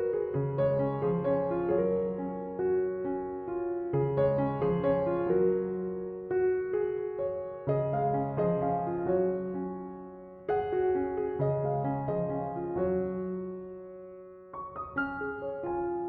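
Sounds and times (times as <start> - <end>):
gentle piano piece: 0.0 - 16.0.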